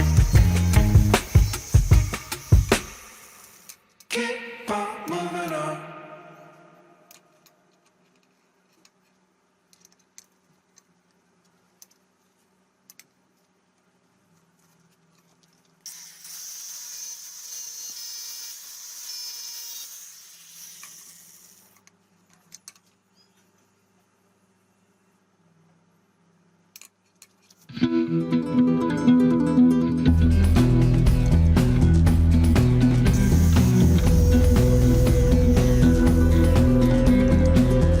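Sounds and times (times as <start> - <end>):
small power tool whirring: 0.0 - 3.8, 15.8 - 21.9, 33.1 - 36.5.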